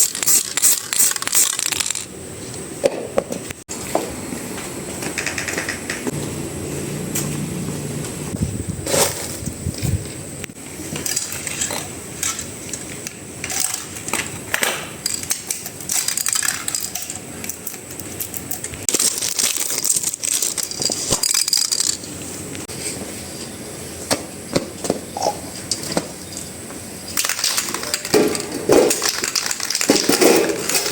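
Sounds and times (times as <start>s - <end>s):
metal tools clinking: 10.9s - 14.2s, 15.0s - 22.1s.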